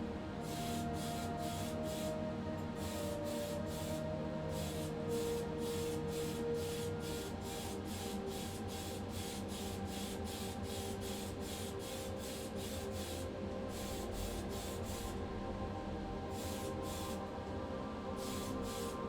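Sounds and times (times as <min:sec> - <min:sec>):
high hissing beat: 0:18.2 - 0:19.0.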